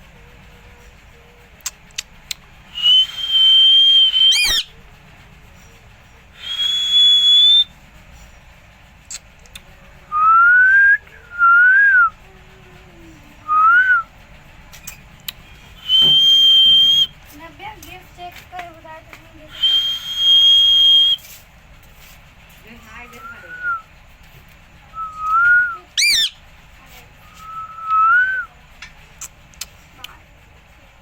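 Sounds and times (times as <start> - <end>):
parrot whistling: 2.7 - 4.8, 6.4 - 7.7, 13.5 - 14.1, 15.8 - 17.2, 19.5 - 21.2, 23.1 - 23.8, 25.0 - 26.4, 27.3 - 28.5.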